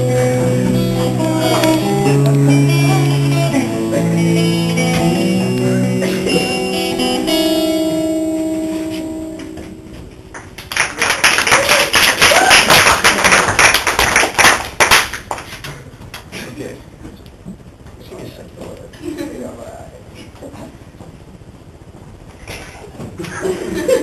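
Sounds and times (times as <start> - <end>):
acoustic guitar song: 0.0 - 10.2
people clapping: 10.3 - 16.3.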